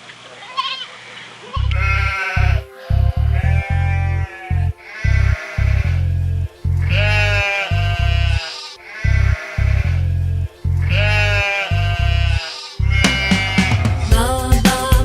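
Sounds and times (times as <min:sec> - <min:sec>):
sheep bleating: 0:01.6 - 0:06.0, 0:06.8 - 0:10.0, 0:10.8 - 0:14.1
background music with bass beat: 0:09.0 - 0:15.0.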